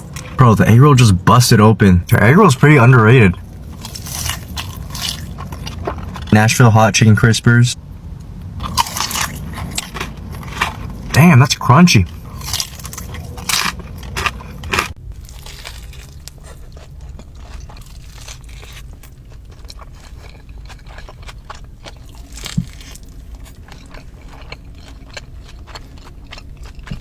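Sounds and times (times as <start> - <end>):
chewing with small crackles: 3.3 - 6.4, 8.6 - 11.3, 12.0 - 27.0
crunching bites into fried chicken: 3.7 - 6.2, 8.6 - 11.3, 12.2 - 27.0.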